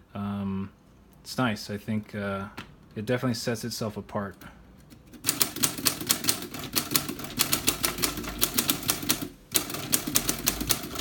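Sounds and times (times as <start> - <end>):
typewriter key strikes: 5.2 - 11.0.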